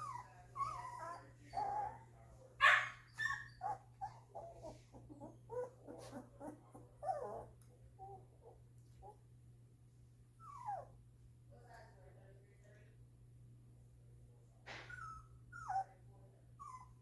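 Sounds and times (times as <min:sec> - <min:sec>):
puppies whimpering and squealing: 0:00.0 - 0:09.2
puppy yelp: 0:02.6 - 0:04.5.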